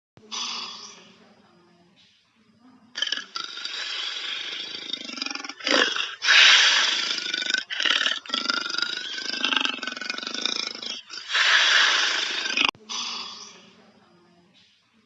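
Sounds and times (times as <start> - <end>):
wild animal roaring: 3.0 - 12.8.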